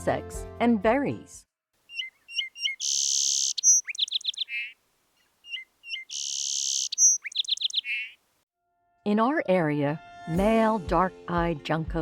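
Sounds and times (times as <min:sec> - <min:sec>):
song sparrow singing: 0:01.9 - 0:08.2.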